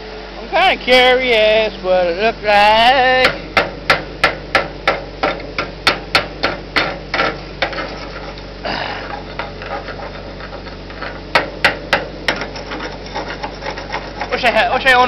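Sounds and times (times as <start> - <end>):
sharp metal-on-metal knocks: 3.2 - 8.3, 9.2 - 14.4
wrench knocking slag off weld: 3.2 - 14.5.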